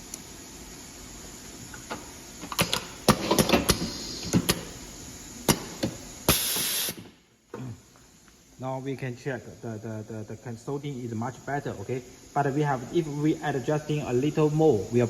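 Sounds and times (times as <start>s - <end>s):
air hiss burst: 3.1s - 4.9s, 5.5s - 7.2s.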